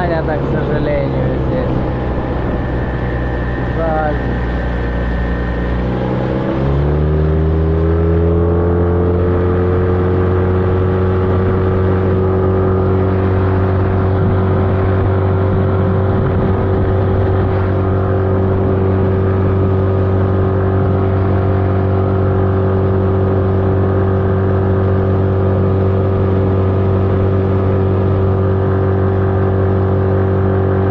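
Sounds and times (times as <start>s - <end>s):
outboard motor running: 0.0s - 30.9s.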